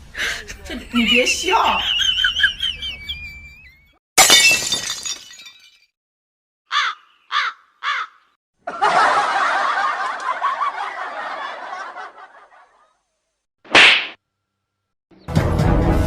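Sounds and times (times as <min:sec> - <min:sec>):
crowd laughter: 0:00.4 - 0:03.8, 0:08.6 - 0:13.0.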